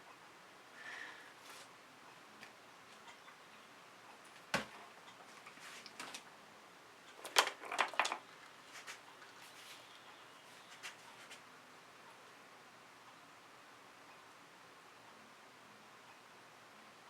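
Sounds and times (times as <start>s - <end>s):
paint containers and tools clicking: 7.1s - 8.5s.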